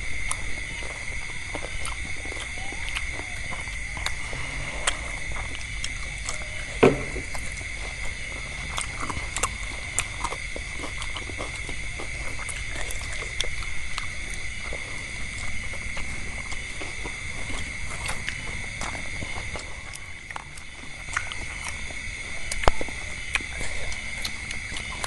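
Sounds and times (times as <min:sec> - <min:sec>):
chewing: 0:00.0 - 0:25.0
steady high-pitched hum: 0:00.0 - 0:25.0
sharp knock: 0:06.8 - 0:07.2.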